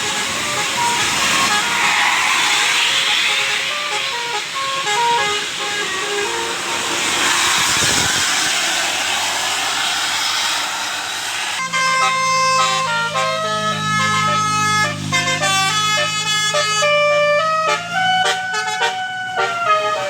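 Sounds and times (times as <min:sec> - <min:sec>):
bus musical air horn melody: 0:00.0 - 0:07.6, 0:11.6 - 0:20.0
loud steady hiss: 0:00.0 - 0:13.1.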